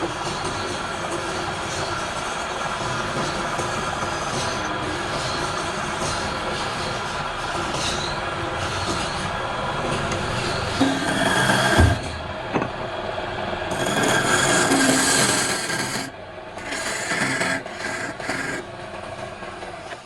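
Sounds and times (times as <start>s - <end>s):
wood rasping on a lathe: 10.7s - 12.2s, 13.7s - 18.6s
knock: 10.8s - 12.7s.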